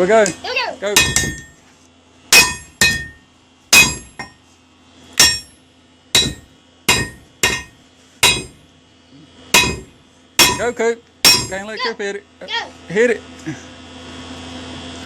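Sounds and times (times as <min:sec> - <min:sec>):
hammer ringing on metal: 0:01.0 - 0:01.6, 0:02.3 - 0:04.4, 0:05.2 - 0:05.6, 0:06.2 - 0:08.6, 0:09.6 - 0:11.7.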